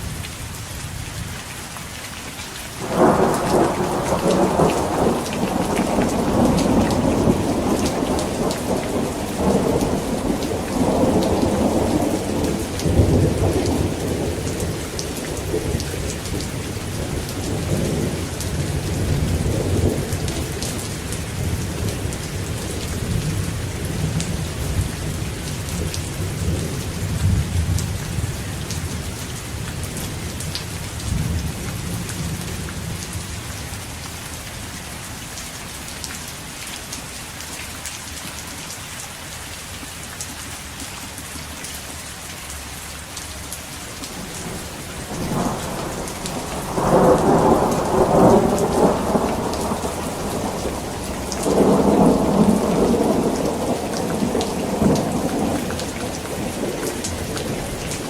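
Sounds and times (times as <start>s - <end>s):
rain falling: 0.0s - 58.0s
thunder rumbling: 2.8s - 29.0s, 44.2s - 58.0s.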